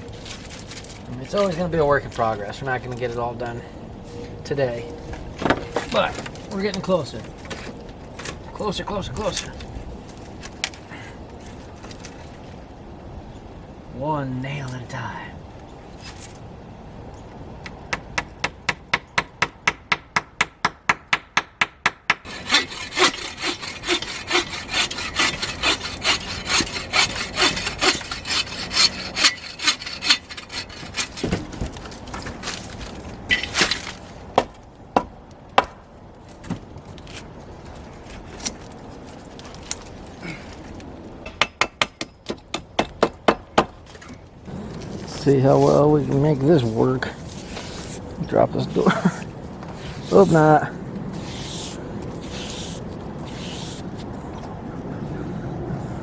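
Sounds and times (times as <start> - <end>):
saw cutting through wood: 22.1 - 31.3, 49.7 - 54.0.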